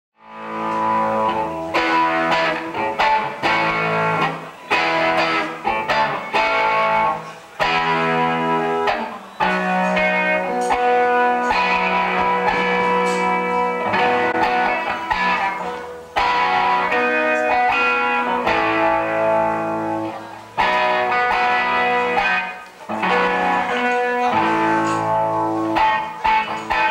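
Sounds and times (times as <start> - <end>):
electric guitar strumming chords: 0.2 - 26.9.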